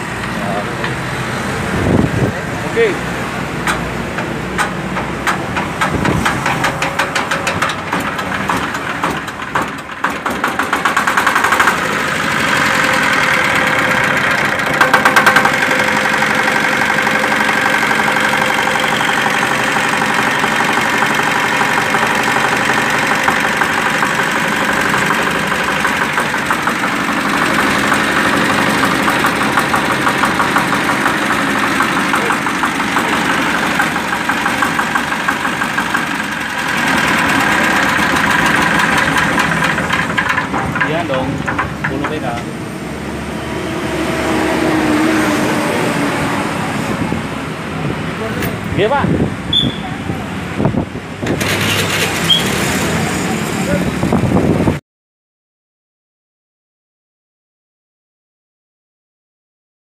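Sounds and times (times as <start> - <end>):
diesel engine knocking: 0.0 - 42.7, 50.8 - 52.2.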